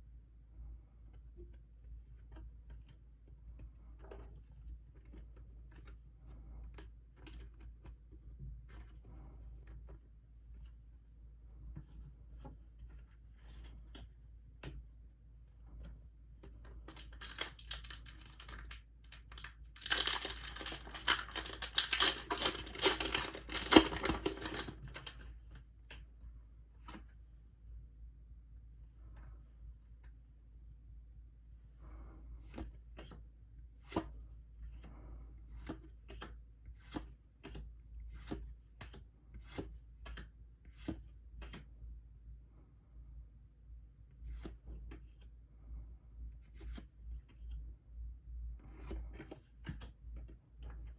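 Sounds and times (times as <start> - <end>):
cards tapping and rustling: 16.4 - 25.3, 35.6 - 41.7
crinkly wrapping torn and crumpled: 16.9 - 25.2.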